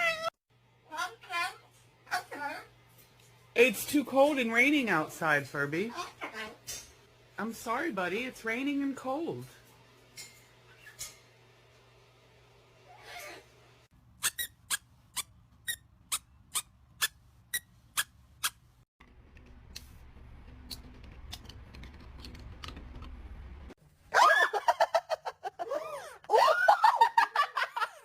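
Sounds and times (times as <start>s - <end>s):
low room hum: 0.0s - 28.0s
parrot squeaking: 14.2s - 18.6s.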